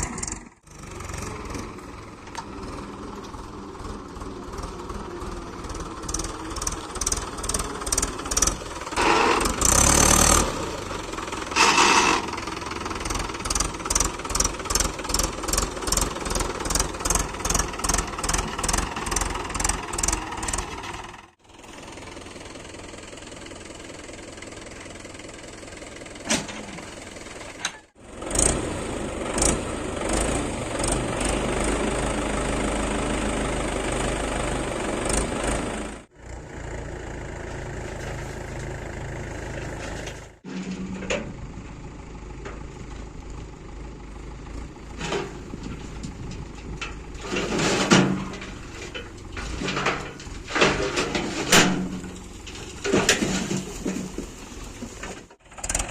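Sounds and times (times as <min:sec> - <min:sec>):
diesel engines running: 0:00.0 - 0:55.9
knocks and clanks: 0:45.0 - 0:55.8.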